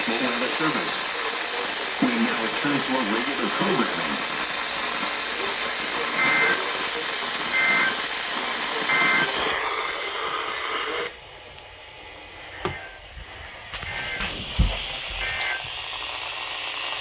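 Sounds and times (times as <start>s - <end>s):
radio static hiss: 0.0s - 17.0s.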